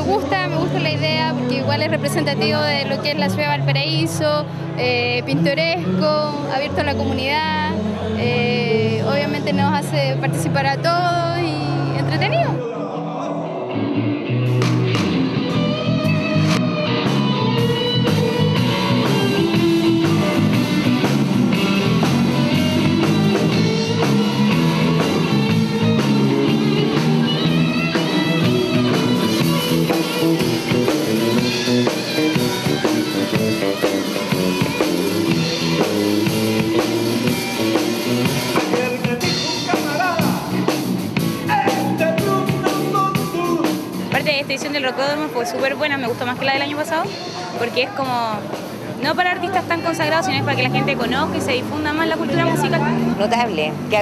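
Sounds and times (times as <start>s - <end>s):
rock music with guitars and drums: 0.0s - 54.0s.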